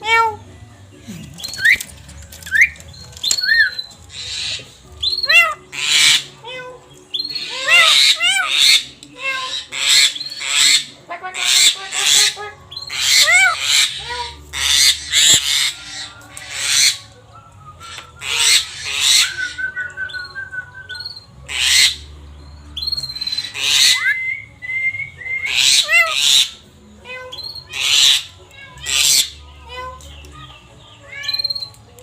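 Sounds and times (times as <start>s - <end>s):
harsh raspy bird calls: 2.5s - 6.4s, 7.1s - 17.1s, 17.8s - 19.6s, 21.0s - 22.1s, 25.5s - 26.6s, 27.6s - 29.4s.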